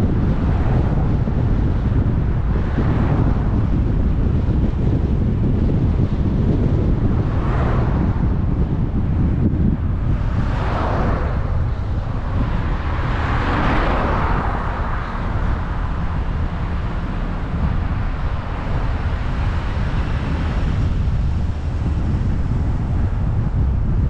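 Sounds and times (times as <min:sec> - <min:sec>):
car road and engine rumble: 0:00.0 - 0:24.0.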